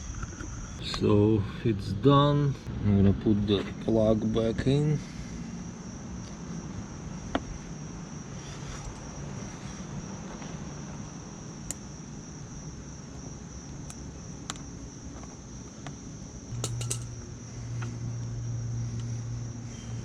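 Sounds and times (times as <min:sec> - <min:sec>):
steady high whine: 0:00.0 - 0:20.0
low hum: 0:16.0 - 0:20.0.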